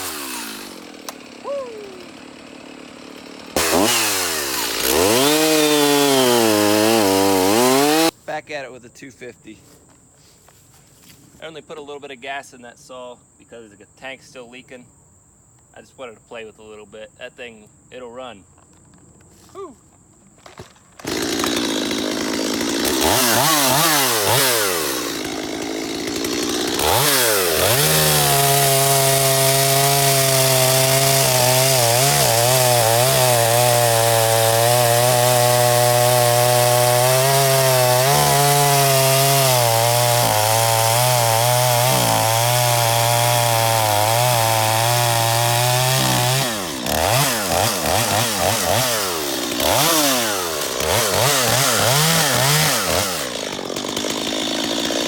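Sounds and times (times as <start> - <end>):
chainsaw revving and cutting wood: 0.0 - 8.2, 20.4 - 55.0.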